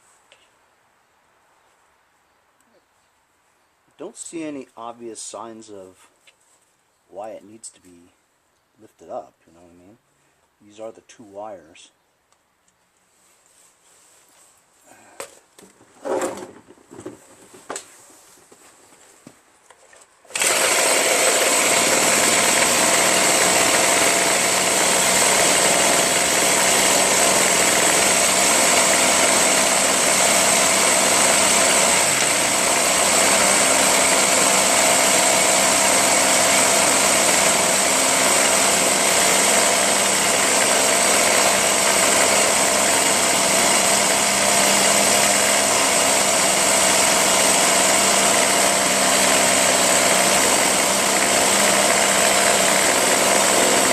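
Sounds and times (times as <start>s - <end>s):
leaf blower engine running: 20.3s - 53.9s.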